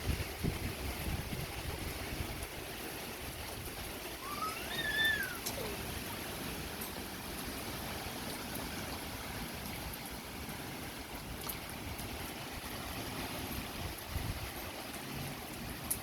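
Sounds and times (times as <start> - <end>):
strong wind blowing: 0.0 - 2.5, 12.2 - 14.7
wind rumble on microphone: 0.0 - 16.0.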